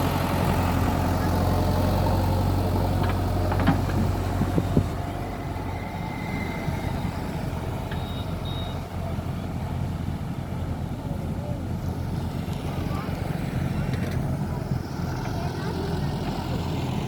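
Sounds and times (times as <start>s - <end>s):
diesel engine running: 0.0s - 17.0s
high beeps: 5.1s - 8.8s.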